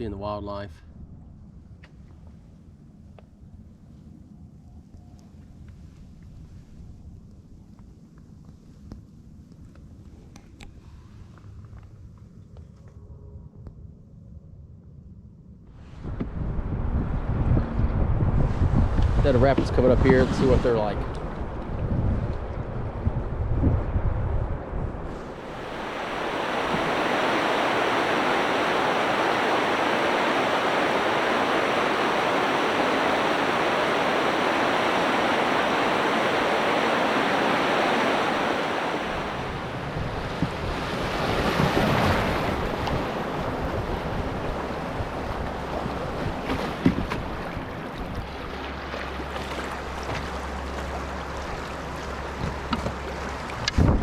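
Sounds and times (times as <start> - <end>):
river rapid rushing: 25.3 - 54.0.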